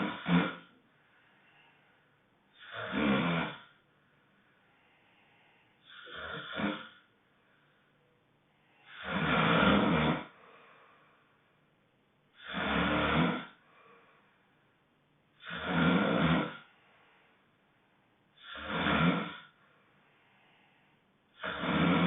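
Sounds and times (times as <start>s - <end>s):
loud honking snoring: 0.0s - 0.7s, 2.6s - 3.8s, 5.9s - 7.0s, 8.9s - 10.4s, 12.4s - 13.6s, 15.4s - 16.7s, 18.4s - 19.5s, 21.4s - 22.0s.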